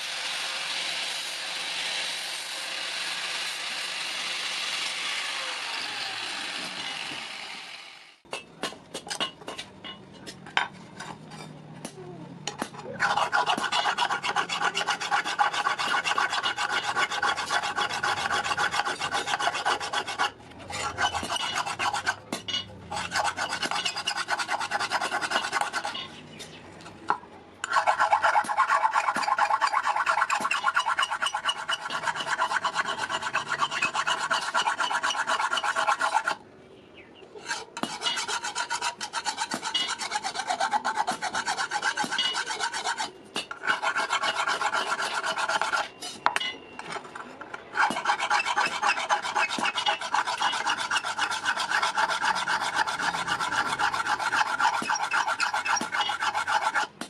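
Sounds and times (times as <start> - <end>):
hand file scraping steel: 12.5 - 26.3, 27.6 - 36.4, 37.4 - 46.3, 46.9 - 57.0.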